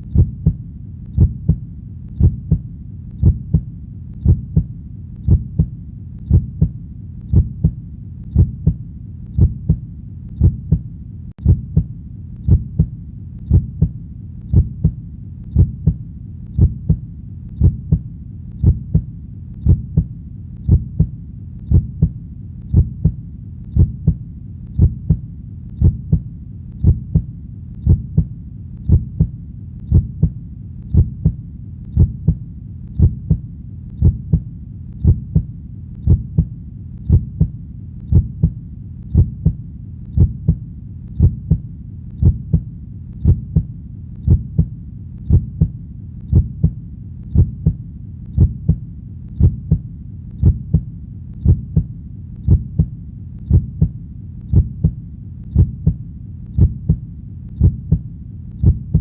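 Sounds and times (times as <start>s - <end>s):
low continuous hum: 0.0s - 59.0s
heartbeat double thump: 0.1s - 0.6s, 1.2s - 1.6s, 2.2s - 4.7s, 5.3s - 8.8s, 9.4s - 9.8s, 10.4s - 11.9s, 12.5s - 16.0s, 16.6s - 17.0s, 17.6s - 20.1s, 20.7s - 23.2s, 23.8s - 24.2s, 24.8s - 25.2s, 25.8s - 31.4s, 32.0s - 32.4s, 33.0s - 39.6s, 40.2s - 40.6s, 41.2s - 44.7s, 45.3s - 47.8s, 48.4s - 48.8s, 49.4s - 56.0s, 56.6s - 57.0s, 57.6s - 59.0s.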